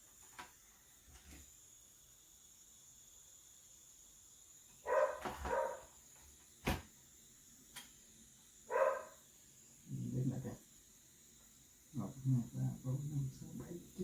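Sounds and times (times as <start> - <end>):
dog barking: 4.9 - 5.9, 8.7 - 9.2.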